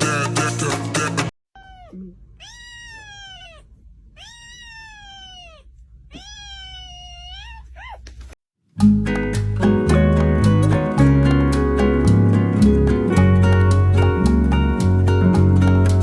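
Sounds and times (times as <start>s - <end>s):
cat meowing: 1.6s - 8.2s.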